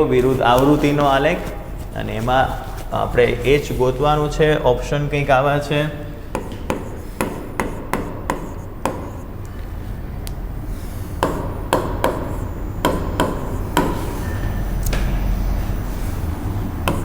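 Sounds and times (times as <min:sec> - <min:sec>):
chalk tapping on board: 0:00.0 - 0:04.4, 0:06.2 - 0:09.5, 0:11.2 - 0:14.3
steady low hum: 0:00.0 - 0:17.0.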